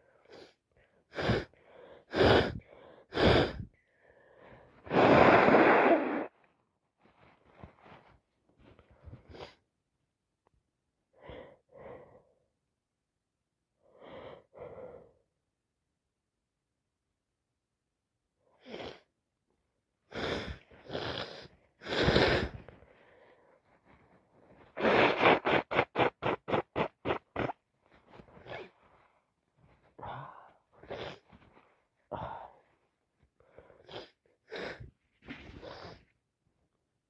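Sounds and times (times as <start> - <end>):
sniffing and snorting: 20.1 - 22.7, 24.6 - 29.0, 30.8 - 31.4, 33.7 - 36.1.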